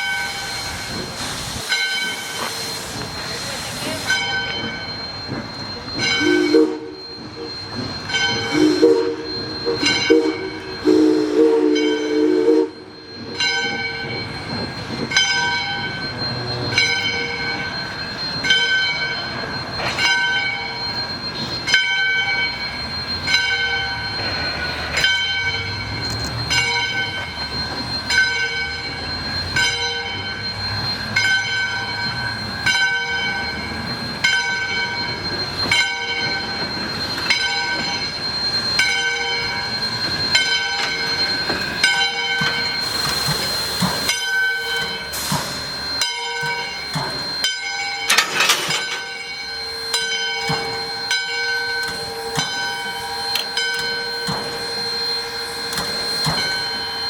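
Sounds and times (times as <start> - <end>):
locomotive bell ringing: 0.0 - 57.0
steam locomotive whistle: 6.0 - 13.4, 42.5 - 57.0.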